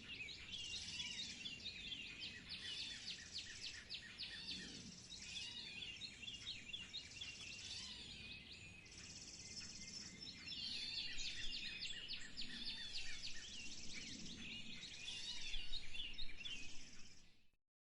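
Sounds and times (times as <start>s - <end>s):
songbirds chirping: 0.0s - 17.5s.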